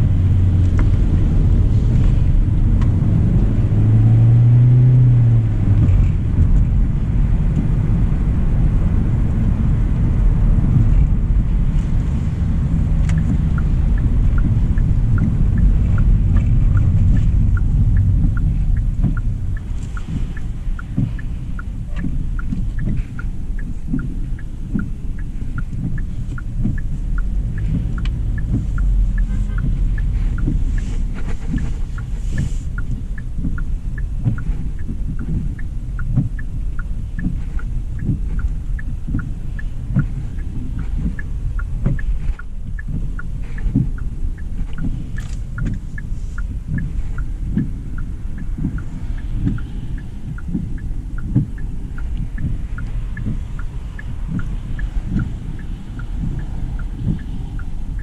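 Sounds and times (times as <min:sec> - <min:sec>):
light regular ticking: 0:00.0 - 0:58.0
low thumps: 0:00.0 - 0:58.0
road and tyre rumble: 0:00.0 - 0:58.0.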